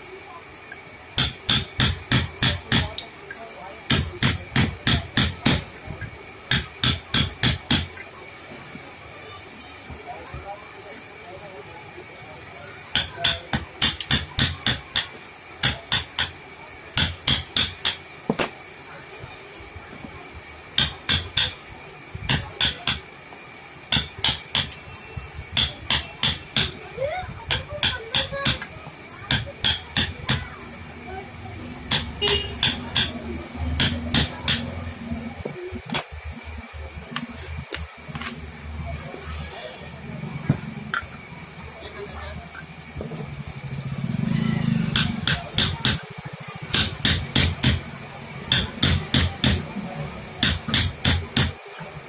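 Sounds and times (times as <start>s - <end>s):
hammer striking wood: 1.2s - 3.0s, 3.9s - 5.7s, 6.5s - 8.0s, 12.9s - 16.4s, 17.0s - 18.6s, 20.8s - 21.6s, 22.3s - 23.1s, 23.9s - 24.8s, 25.6s - 26.8s, 27.5s - 28.7s, 29.3s - 30.5s, 31.9s - 34.8s, 44.9s - 46.1s, 46.7s - 47.9s, 48.5s - 49.7s, 50.4s - 51.6s.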